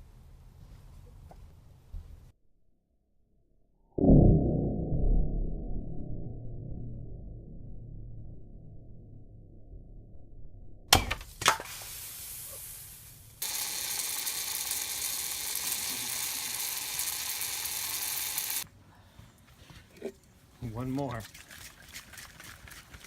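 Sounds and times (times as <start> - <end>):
gas spraying hiss: 11.5 - 18.6.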